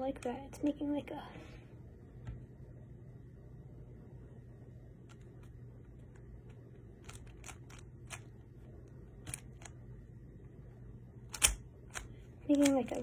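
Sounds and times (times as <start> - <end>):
puzzle cube clicking and snapping: 7.0 - 8.3, 9.2 - 9.8, 11.3 - 13.0.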